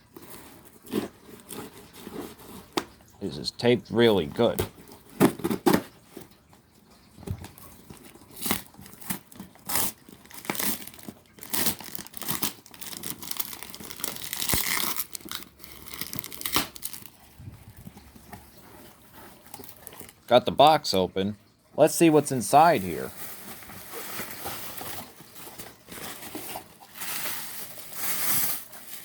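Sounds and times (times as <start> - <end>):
packing tape ripped off cardboard: 0.1 - 3.0, 4.6 - 6.3, 7.9 - 18.0, 23.1 - 29.0.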